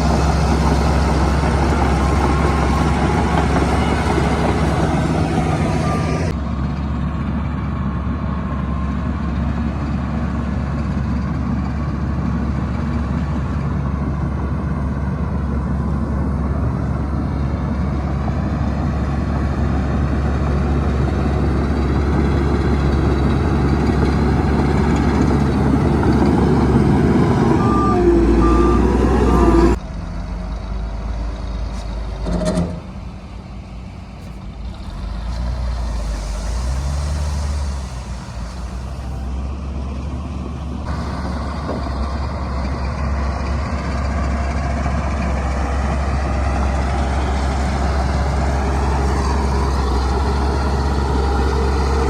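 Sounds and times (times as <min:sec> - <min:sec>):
heavy diesel engines running: 0:00.0 - 0:52.0
reversing alarm beeps: 0:03.8 - 0:06.3, 0:25.4 - 0:29.8.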